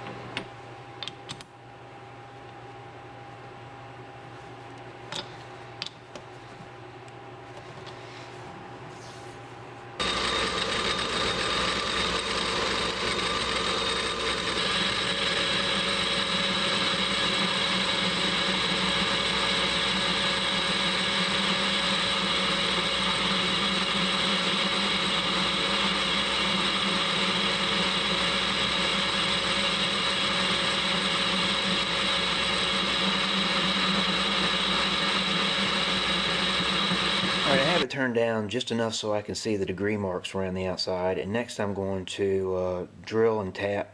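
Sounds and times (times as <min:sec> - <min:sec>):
metal lathe running: 0:10.0 - 0:37.8.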